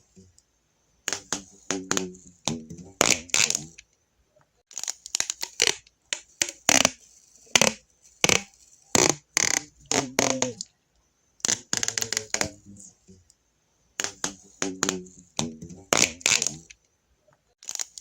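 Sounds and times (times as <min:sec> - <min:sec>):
adhesive tape ripping: 0:01.1 - 0:03.7, 0:04.7 - 0:10.6, 0:11.4 - 0:12.6, 0:14.0 - 0:16.7, 0:17.6 - 0:18.0.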